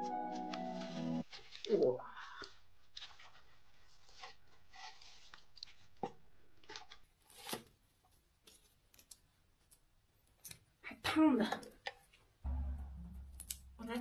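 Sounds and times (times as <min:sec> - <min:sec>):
faint rubbing and scraping: 0:03.0 - 0:06.0.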